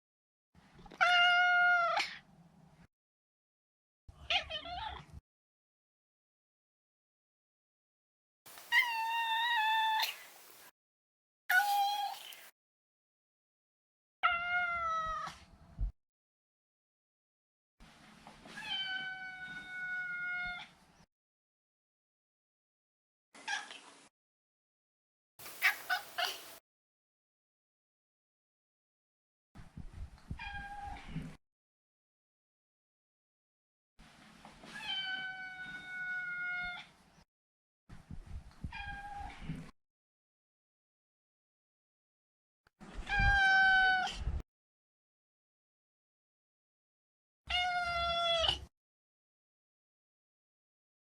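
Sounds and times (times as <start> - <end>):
cat meowing: 8.7 - 10.2, 47.5 - 48.6.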